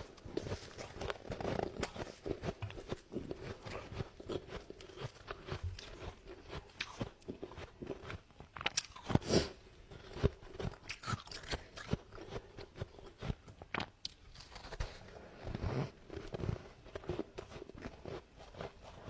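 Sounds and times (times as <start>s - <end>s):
frost being crunched and chewed: 0.0s - 9.3s, 9.9s - 19.0s.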